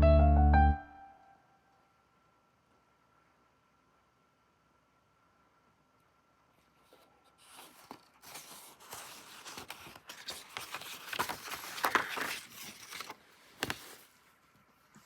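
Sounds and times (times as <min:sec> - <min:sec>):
rustling and crackling handling noise: 0:06.6 - 0:15.0.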